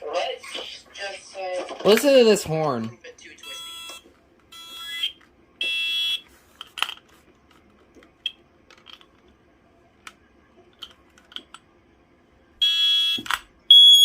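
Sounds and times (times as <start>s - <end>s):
smoke alarm horn blast: 12.6s - 14.0s.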